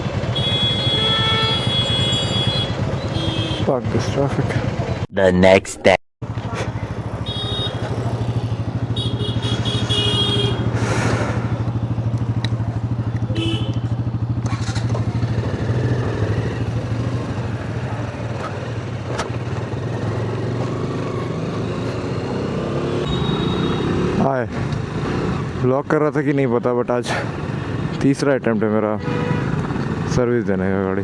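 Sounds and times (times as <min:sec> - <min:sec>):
motorcycle engine running: 0:00.0 - 0:05.1, 0:06.2 - 0:25.6.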